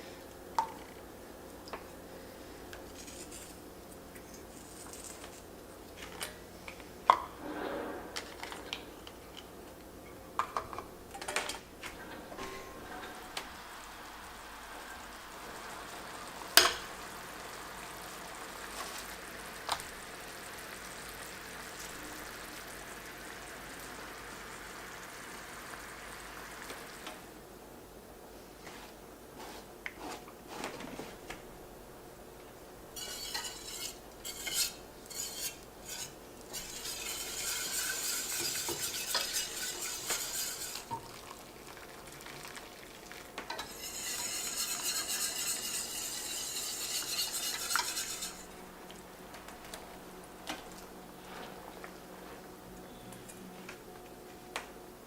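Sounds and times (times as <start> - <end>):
utensil stirring and scraping pan: 2.9 - 3.6, 32.9 - 41.0, 43.5 - 48.6
food sizzling in a pan: 13.2 - 27.2, 32.9 - 48.6.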